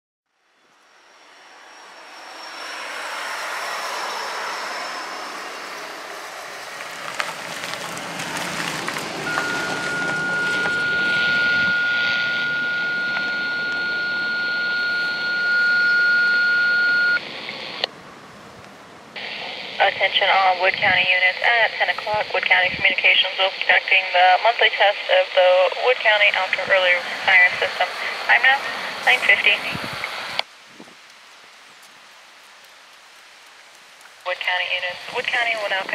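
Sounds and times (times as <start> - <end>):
passing vehicles: 0.4 - 23.4, 25.4 - 30.4
high radio alert tone: 9.3 - 17.9, 19.2 - 30.1, 34.3 - 35.9.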